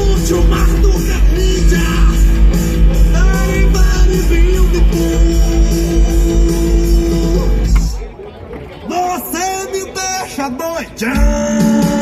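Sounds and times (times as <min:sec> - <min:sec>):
person singing: 0:00.0 - 0:07.8, 0:11.0 - 0:12.0
rock and roll music: 0:00.0 - 0:08.0, 0:10.9 - 0:12.0.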